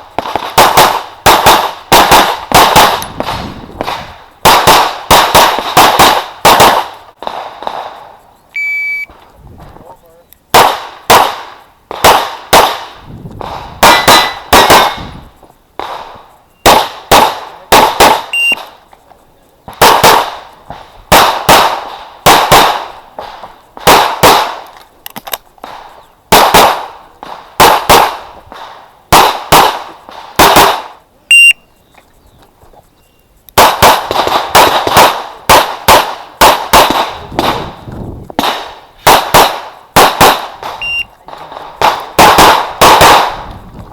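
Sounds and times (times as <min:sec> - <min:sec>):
pistol shots: 0:00.1 - 0:08.0, 0:10.5 - 0:15.1, 0:15.8 - 0:18.7, 0:19.7 - 0:24.7, 0:25.6 - 0:31.0, 0:33.6 - 0:37.8, 0:38.4 - 0:43.4.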